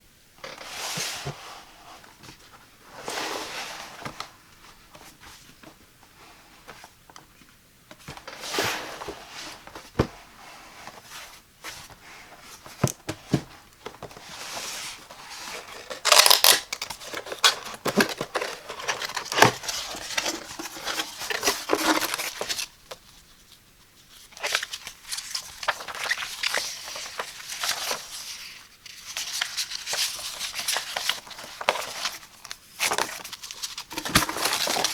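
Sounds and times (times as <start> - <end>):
cardboard tearing and rustling: 14.3 - 22.7, 24.4 - 34.9.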